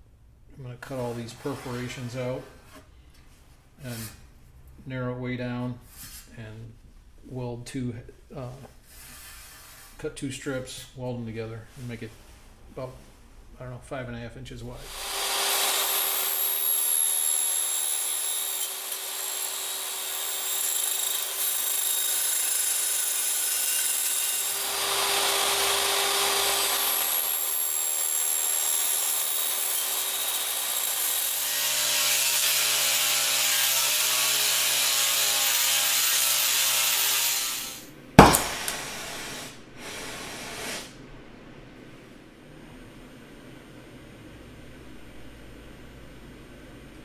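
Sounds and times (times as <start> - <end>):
power tool cutting sheet steel: 14.8 - 40.9
sharp metallic clank: 38.2 - 38.9.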